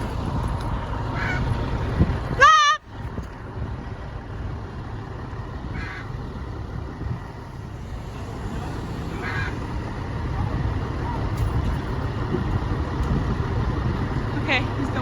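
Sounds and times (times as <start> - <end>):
engine idling: 0.0 - 15.0
macaw harsh calls: 5.8 - 6.1, 9.0 - 9.8.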